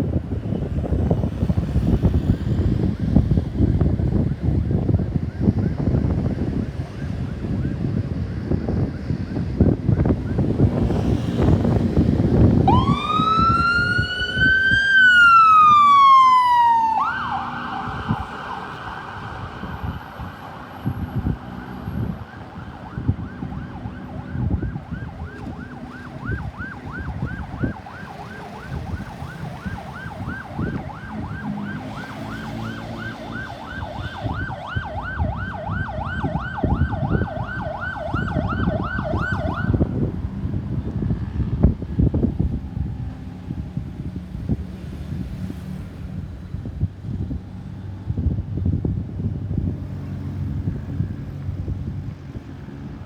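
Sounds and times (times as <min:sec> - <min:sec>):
ambulance siren wailing and yelping: 0:12.4 - 0:40.6.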